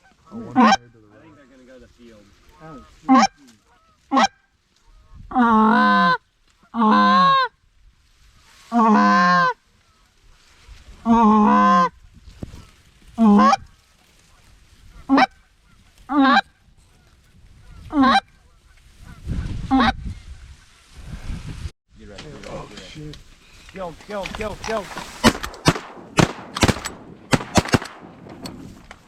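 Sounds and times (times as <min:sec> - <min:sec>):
duck call honking: 0:00.0 - 0:00.9, 0:02.9 - 0:04.5.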